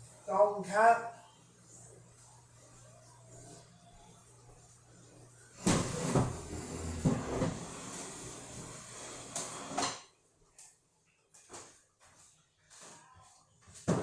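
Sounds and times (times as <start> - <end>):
kitchenware clanking: 5.6 - 10.1.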